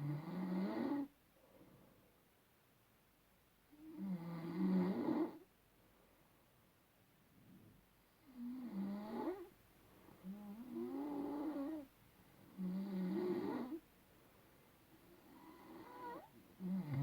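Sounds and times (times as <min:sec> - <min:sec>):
person snoring: 0:16.6 - 0:17.0.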